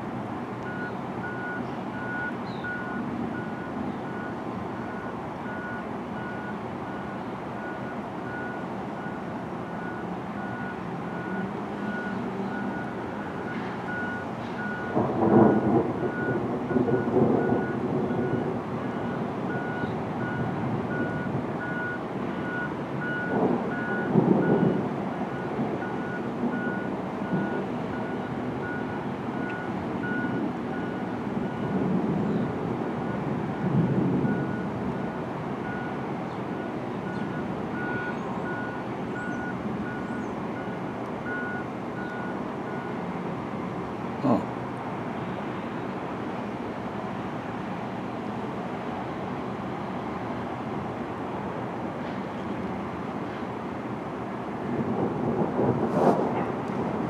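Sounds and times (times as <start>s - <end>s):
vehicle reversing alarm beeping: 0.6s - 43.2s.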